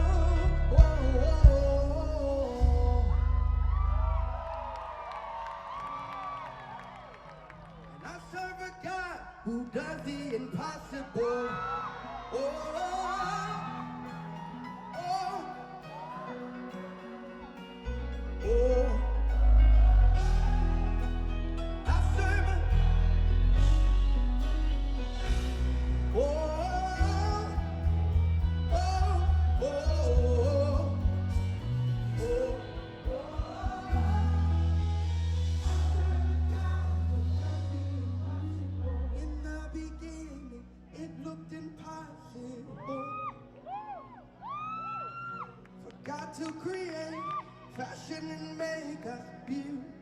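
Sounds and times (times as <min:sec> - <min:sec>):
voice singing gospel: 0:00.0 - 0:04.0, 0:08.0 - 0:43.6
heavy bass line: 0:00.0 - 0:04.5, 0:17.9 - 0:40.3
sustained chords: 0:17.8 - 0:39.1.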